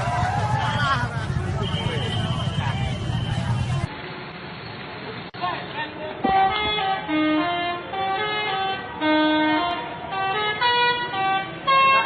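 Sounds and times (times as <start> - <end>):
musical bus horn playing tune: 6.3 - 12.0.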